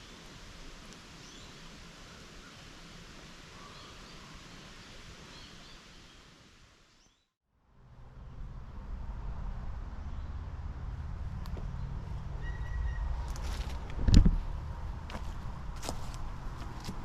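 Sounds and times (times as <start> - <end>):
background hiss: 0.0 - 7.2
bird chirps: 12.4 - 13.2.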